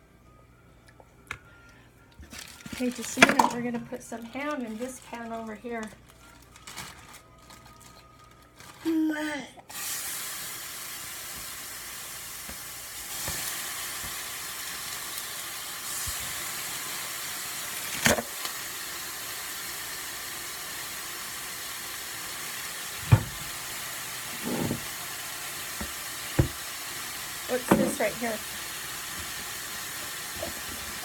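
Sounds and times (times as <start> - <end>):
food sizzling in a frying pan: 9.7 - 31.0
kitchenware knocks: 23.1 - 23.4, 24.4 - 24.8, 27.6 - 28.0.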